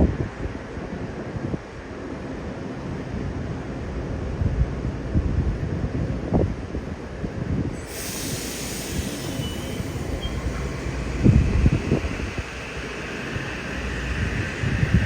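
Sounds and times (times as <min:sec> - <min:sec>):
train rail noise: 0:07.6 - 0:15.0
wind buffeting microphone: 0:09.0 - 0:15.0.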